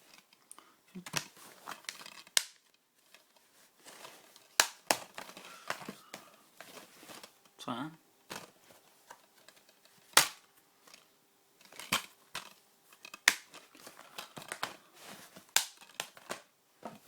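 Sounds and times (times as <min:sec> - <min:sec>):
plastic cases clacking: 0:01.0 - 0:02.5, 0:03.9 - 0:07.4, 0:08.3 - 0:17.0.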